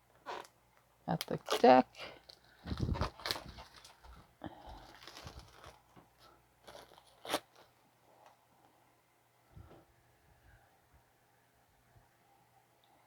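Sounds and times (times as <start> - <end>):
packaging crinkling and rustling: 0.1 - 8.4.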